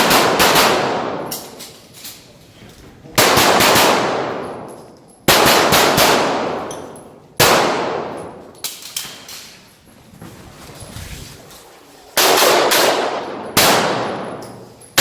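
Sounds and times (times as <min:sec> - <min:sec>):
pistol shots with echo: 0:00.0 - 0:01.6, 0:03.2 - 0:04.7, 0:05.3 - 0:08.4, 0:12.2 - 0:14.4.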